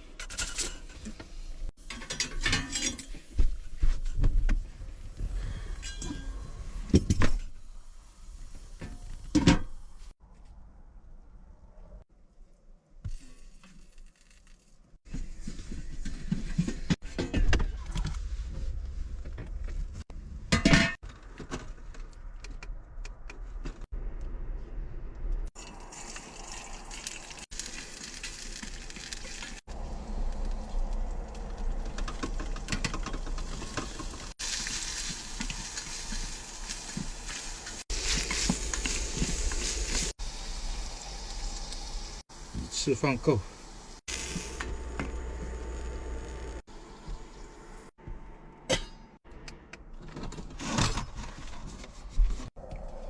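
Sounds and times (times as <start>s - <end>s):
utensils clattering on cookware: 1.8s - 3.2s
food frying in a pan: 25.7s - 29.7s, 33.5s - 42.6s
sizzling hiss: 34.4s - 44.8s.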